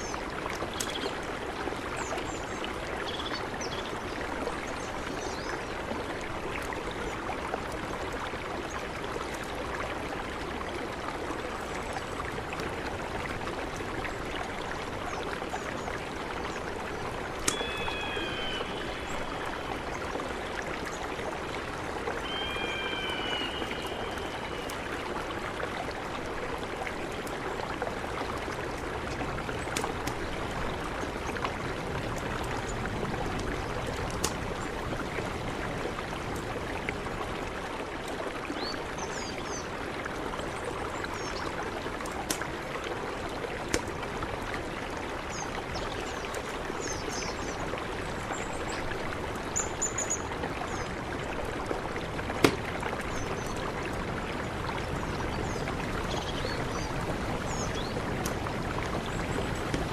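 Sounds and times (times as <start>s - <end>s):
river water rushing: 0.0s - 59.9s
bird whistled call: 17.5s - 19.6s, 22.2s - 24.7s.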